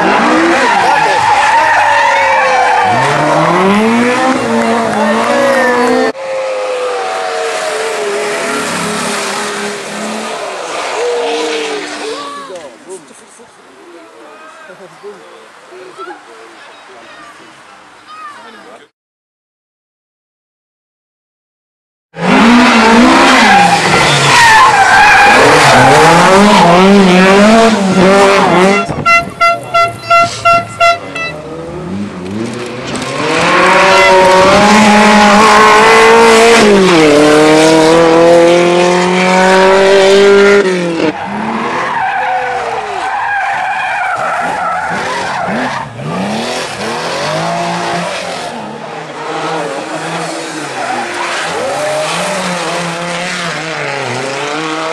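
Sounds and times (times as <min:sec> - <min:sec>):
rally car engines revving: 0:00.0 - 0:13.5, 0:22.2 - 0:54.9.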